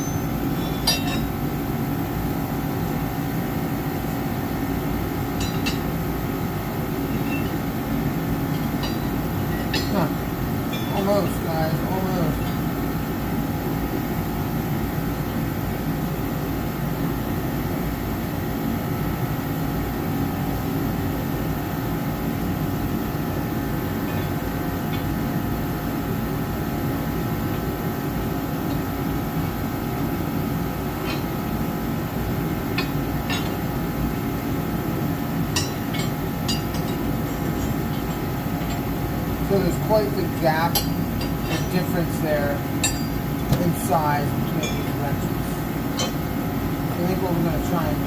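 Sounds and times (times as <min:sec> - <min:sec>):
wrenches clinking: 0:00.0 - 0:01.4, 0:05.4 - 0:05.9, 0:07.1 - 0:07.6, 0:08.4 - 0:12.7, 0:31.0 - 0:31.4, 0:32.7 - 0:33.7, 0:35.5 - 0:39.1, 0:39.7 - 0:46.3
faint hum: 0:00.0 - 0:48.0.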